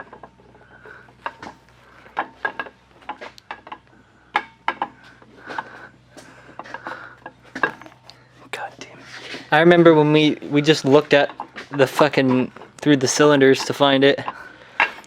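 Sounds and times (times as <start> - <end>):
light metal clinks and knocks: 0.0 - 8.2.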